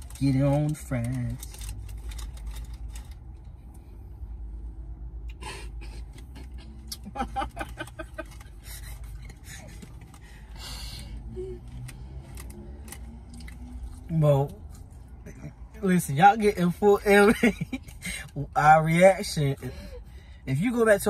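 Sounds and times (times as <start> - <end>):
car cabin hum: 6.0 - 10.2.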